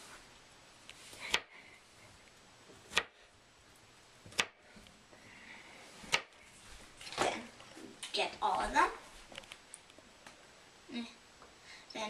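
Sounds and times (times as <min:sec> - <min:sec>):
knife chopping on cutting board: 0:02.8 - 0:03.2.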